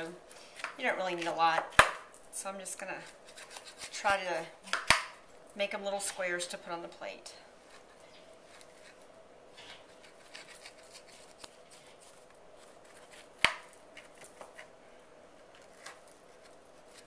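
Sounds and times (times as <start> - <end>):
knife cutting crumbly crust: 2.8 - 5.0, 7.6 - 9.0, 9.7 - 14.8, 15.5 - 17.0.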